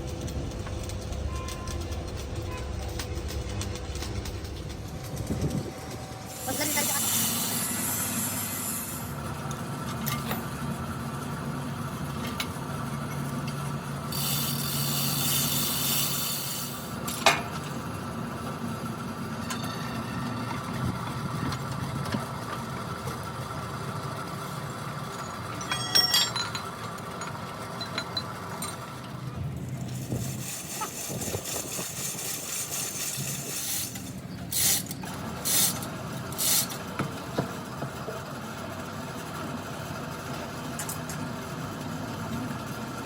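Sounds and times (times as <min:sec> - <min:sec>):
metal clinks: 0:25.2 - 0:28.8.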